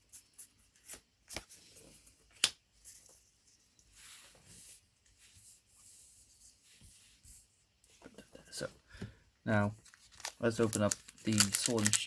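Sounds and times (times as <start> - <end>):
cards rustling: 9.8 - 12.0
cards sliding: 9.9 - 12.0
cards clicking: 10.1 - 12.0.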